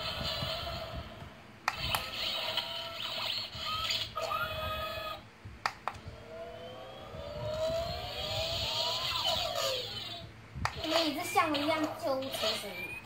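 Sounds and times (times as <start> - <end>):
sharp clicks: 1.6 - 2.1, 5.6 - 6.1
synthetic toy tones: 1.8 - 5.2, 6.1 - 10.3
siren-like electronic wail: 1.8 - 5.3, 6.0 - 10.3.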